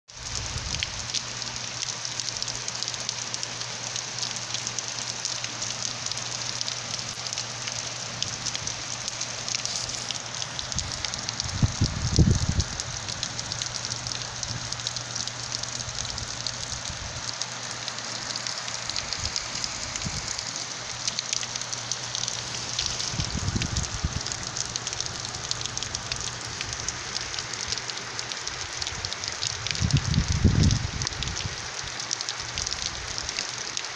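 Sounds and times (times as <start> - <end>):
steady rain falling: 0.1 - 33.9
low rumbles: 10.6 - 15.0, 18.8 - 27.8.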